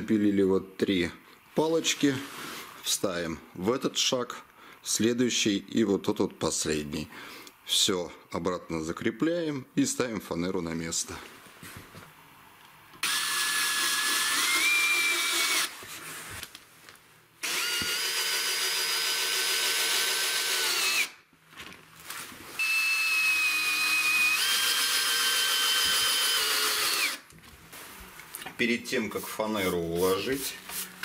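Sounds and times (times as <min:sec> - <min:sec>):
cordless drill driving screws: 0:13.0 - 0:15.8, 0:17.4 - 0:21.2, 0:22.6 - 0:27.3.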